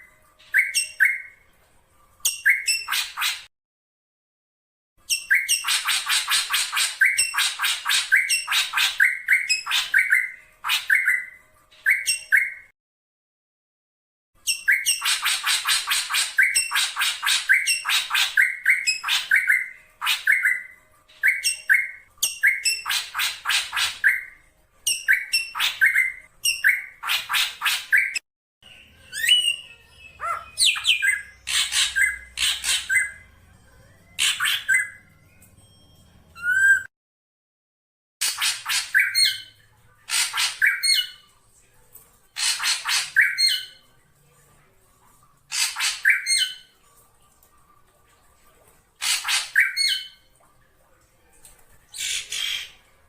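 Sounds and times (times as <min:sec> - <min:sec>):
bird harsh rasping squawks: 0:30.2 - 0:33.2, 0:40.1 - 0:41.2, 0:42.4 - 0:43.7, 0:49.0 - 0:50.1.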